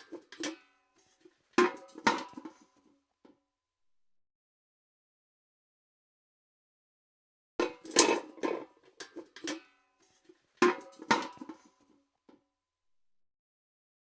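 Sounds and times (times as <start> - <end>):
metal bucket clattering: 0.0 - 2.7, 7.6 - 11.8.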